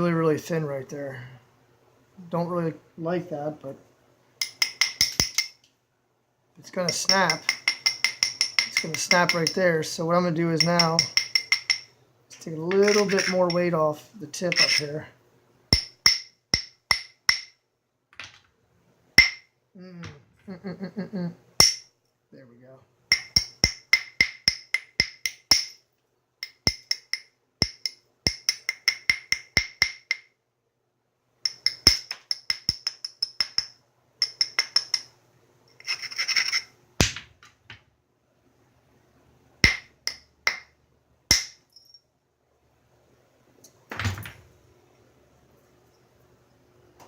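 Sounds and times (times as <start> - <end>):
light taps on stone with ringing: 6.9 - 9.6, 10.6 - 11.9, 23.1 - 25.8, 26.4 - 30.3, 31.5 - 35.1, 39.6 - 40.7.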